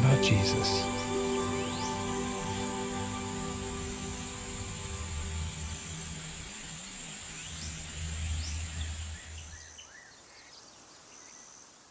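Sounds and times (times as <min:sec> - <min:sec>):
background music low notes: 0:00.0 - 0:07.5
high-pitched insect drone: 0:00.0 - 0:08.1.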